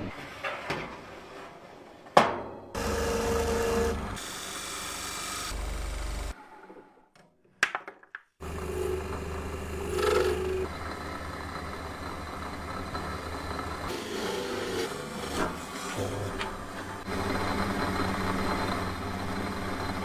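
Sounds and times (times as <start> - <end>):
power tool motor running: 2.8 - 6.3, 8.4 - 10.8.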